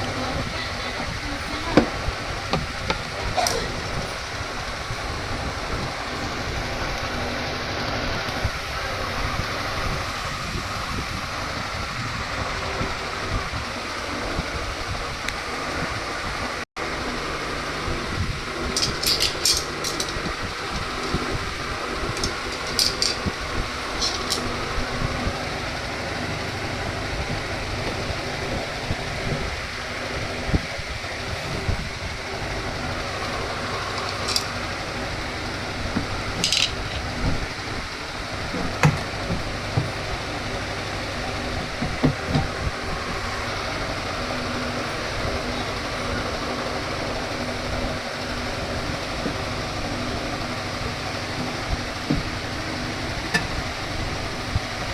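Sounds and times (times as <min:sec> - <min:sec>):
washing machine running: 0:00.0 - 0:54.9
knocks and metallic clinks: 0:18.6 - 0:21.4, 0:22.0 - 0:24.7, 0:33.2 - 0:34.6, 0:36.0 - 0:37.4.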